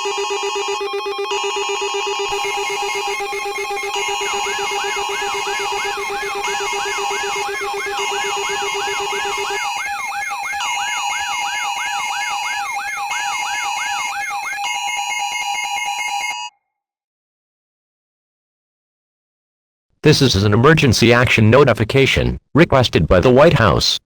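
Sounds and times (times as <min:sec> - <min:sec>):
rapid siren sweep: 0:00.0 - 0:16.4
steady electronic alarm tones: 0:00.0 - 0:16.6.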